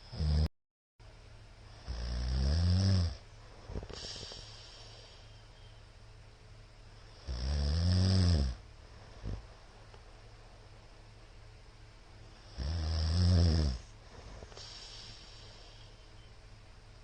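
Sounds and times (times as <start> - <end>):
man snoring loudly: 0.0 - 0.5, 1.8 - 3.2, 7.2 - 8.6, 12.4 - 13.9
breathy exhale: 3.6 - 5.8, 14.0 - 16.3
short snort: 3.7 - 5.2, 13.4 - 15.8.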